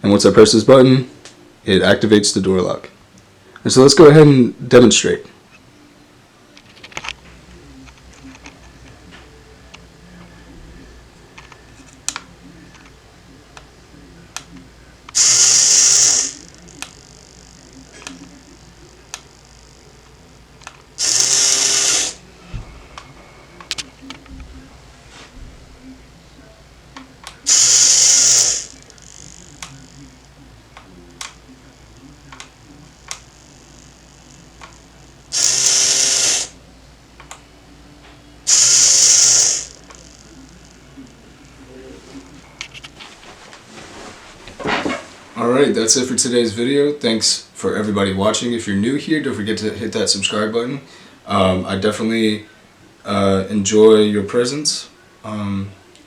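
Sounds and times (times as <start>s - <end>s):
servo motor whirring: 15.1s - 22.3s, 27.4s - 36.6s, 38.5s - 41.2s.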